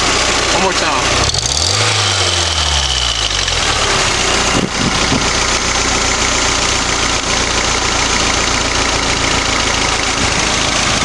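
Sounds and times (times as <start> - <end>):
car engine idling: 0.0 - 11.0
ticking in engine idle: 3.1 - 11.0.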